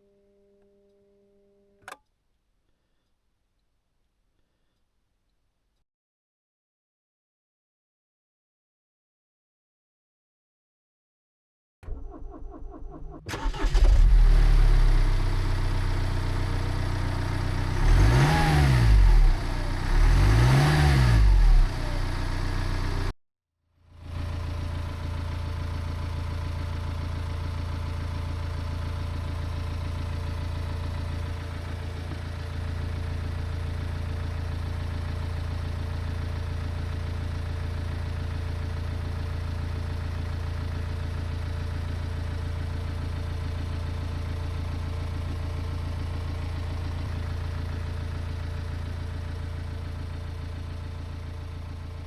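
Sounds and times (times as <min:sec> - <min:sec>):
diesel engine idling and revving: 0:13.8 - 0:23.1, 0:24.0 - 0:52.0.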